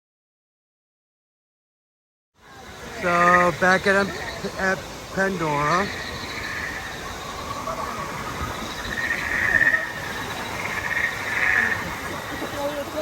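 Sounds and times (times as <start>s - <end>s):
steady background noise: 2.4s - 13.0s
rapid trilling chirps: 2.8s - 13.0s.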